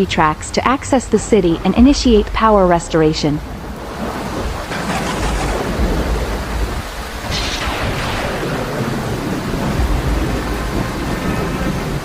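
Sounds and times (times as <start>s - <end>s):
steady rain: 0.0s - 12.0s
thunder rumbles: 3.5s - 12.0s.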